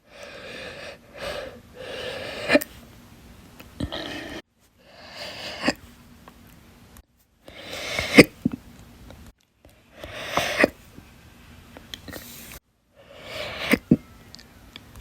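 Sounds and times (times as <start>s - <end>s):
person hiccuping: 13.4s - 14.1s.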